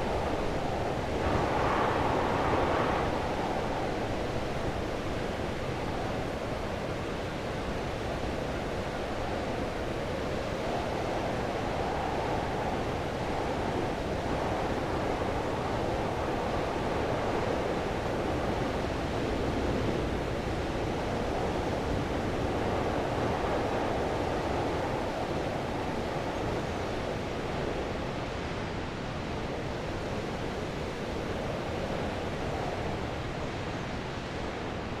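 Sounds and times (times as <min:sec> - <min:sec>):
heavy wind blowing: 0:00.0 - 0:35.0.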